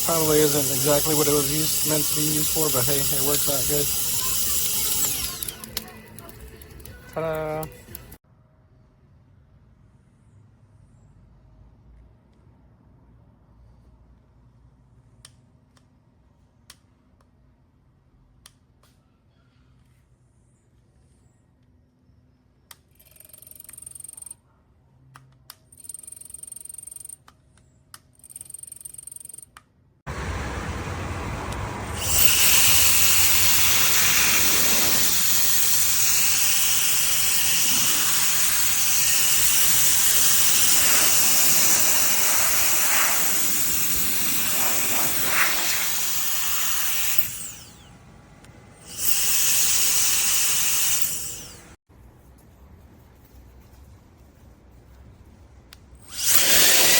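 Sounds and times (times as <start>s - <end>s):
electric air duster whining: 0.0s - 8.2s, 30.1s - 48.0s, 48.8s - 51.8s, 56.0s - 56.9s.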